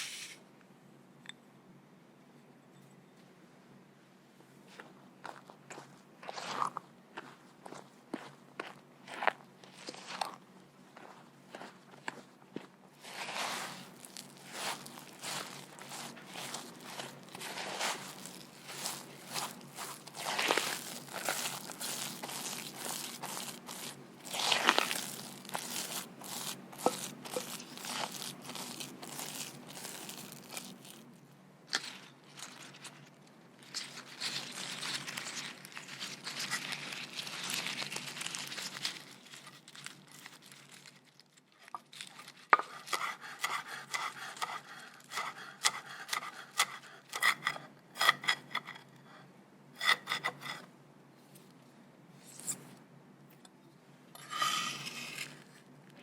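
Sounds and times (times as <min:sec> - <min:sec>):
rubbing and scraping: 0:13.0 - 0:31.1, 0:54.2 - 0:55.5.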